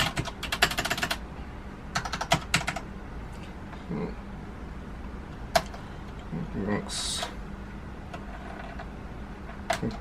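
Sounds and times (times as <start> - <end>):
mechanical keyboard keystrokes: 0.0 - 1.2, 2.0 - 2.8.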